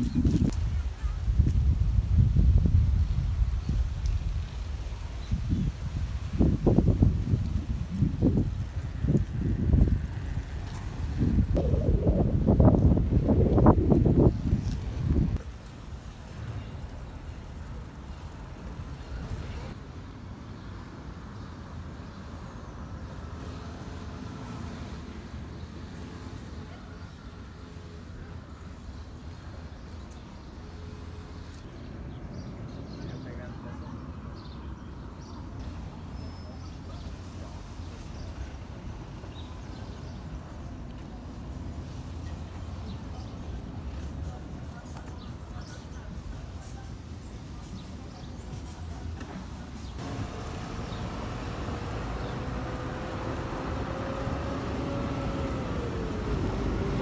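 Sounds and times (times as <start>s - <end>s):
low rumbling outdoor noise: 0.0s - 57.0s
low rumble: 11.0s - 15.4s
small birds chirping: 49.8s - 57.0s.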